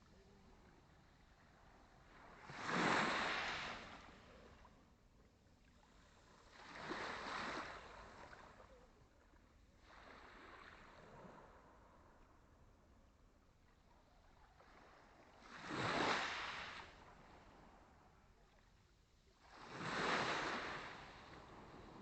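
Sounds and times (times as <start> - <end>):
small waves washing onto shore: 2.0 - 4.8, 15.3 - 17.6, 19.4 - 22.0.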